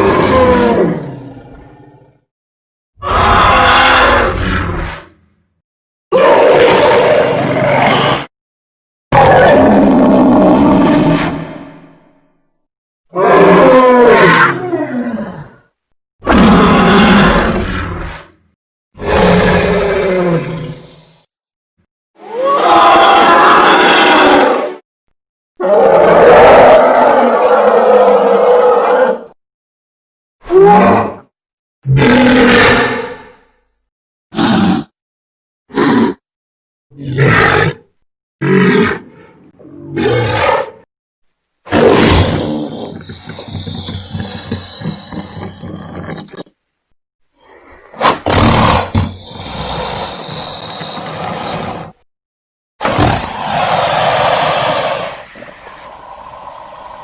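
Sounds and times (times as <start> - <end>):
dragon roars: 0.0 - 2.3, 3.0 - 5.1, 6.1 - 8.3, 9.2 - 12.0, 13.1 - 18.3, 19.0 - 21.2, 22.2 - 24.8, 25.6 - 29.4, 30.5 - 31.3, 31.9 - 33.4, 34.4 - 35.0, 48.0 - 52.0, 52.8 - 57.0.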